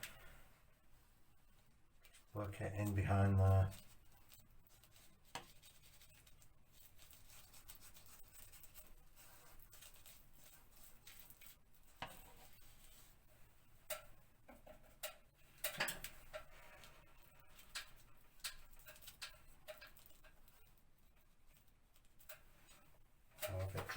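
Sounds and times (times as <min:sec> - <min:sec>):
brush scratching: 0:02.0 - 0:15.3.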